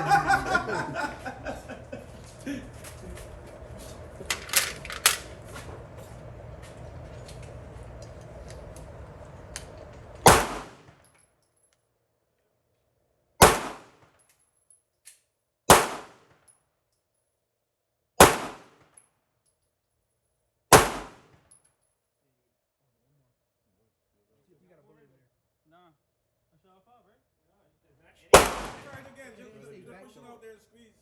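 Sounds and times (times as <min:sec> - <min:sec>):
handgun shots: 0:04.3 - 0:05.3, 0:10.2 - 0:10.8, 0:13.4 - 0:14.0, 0:15.7 - 0:16.2, 0:18.2 - 0:18.8, 0:20.7 - 0:21.3, 0:28.4 - 0:29.0.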